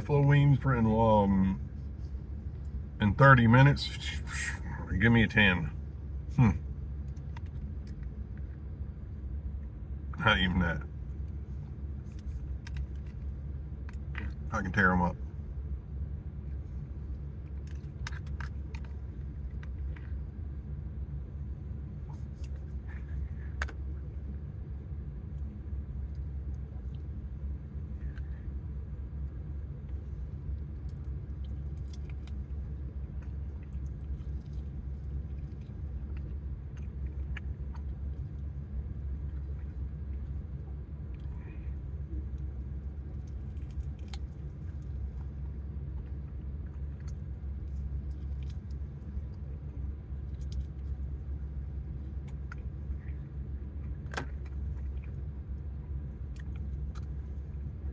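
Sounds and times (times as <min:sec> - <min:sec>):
steady low rumble: 0:00.0 - 0:57.9.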